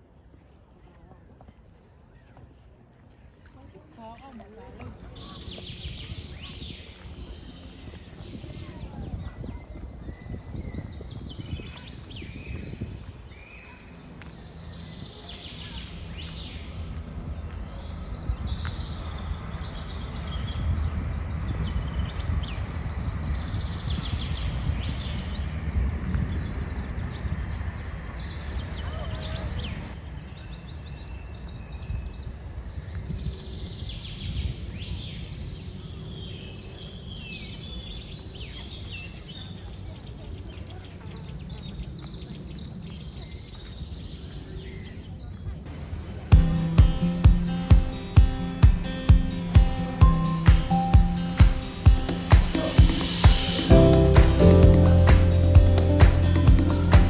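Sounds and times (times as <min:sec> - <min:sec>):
low outdoor rumble: 0:05.2 - 0:30.4, 0:46.4 - 0:57.0
birds calling: 0:05.2 - 0:31.4, 0:47.5 - 0:57.0
low rumble: 0:15.6 - 0:28.6.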